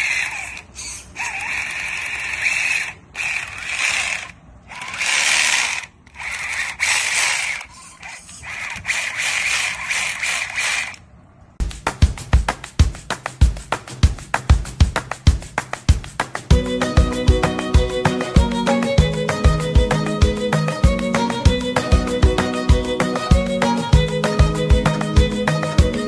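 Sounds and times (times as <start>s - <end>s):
electric motor and gears ratcheting: 0.0s - 11.1s.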